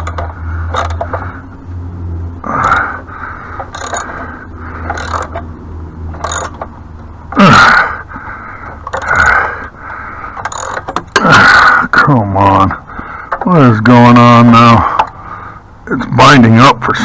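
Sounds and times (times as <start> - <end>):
man breathing hard: 2.4 - 5.1, 7.4 - 10.6, 12.8 - 13.4, 14.8 - 15.8
man grunting: 7.3 - 8.0, 11.2 - 12.7.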